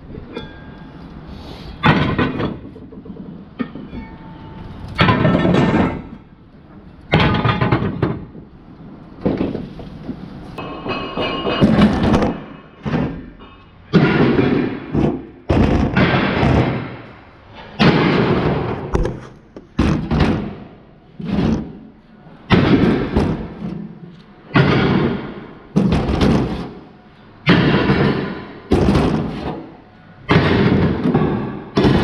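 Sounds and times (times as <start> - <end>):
hard impacts on scrap metal: 1.6 - 32.0.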